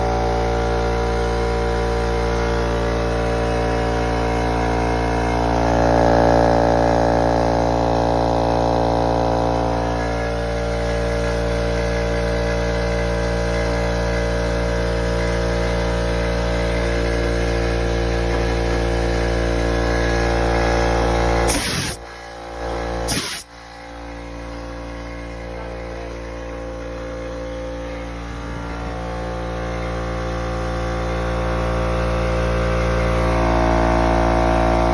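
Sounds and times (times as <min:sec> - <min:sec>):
air compressor motor hum: 0:00.0 - 0:34.9
crackling bursts: 0:21.5 - 0:22.0.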